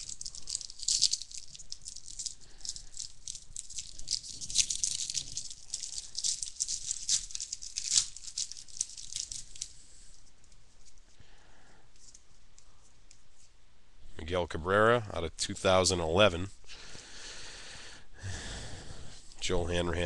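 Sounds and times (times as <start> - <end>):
crackling rustle of card wrappers: 0.0 - 13.4.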